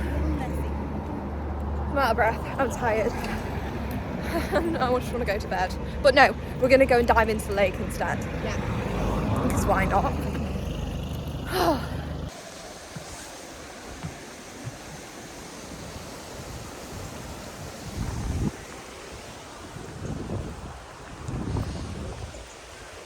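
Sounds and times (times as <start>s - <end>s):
wind buffeting microphone: 0.0s - 23.0s
low rumble: 7.1s - 12.3s.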